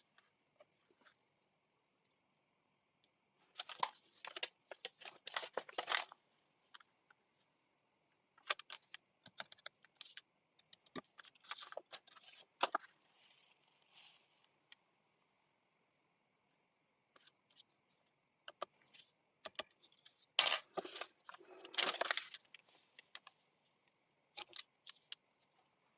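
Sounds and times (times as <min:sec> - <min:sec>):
paper rustling and crinkling: 0:03.4 - 0:06.2, 0:11.0 - 0:14.5, 0:20.0 - 0:23.4.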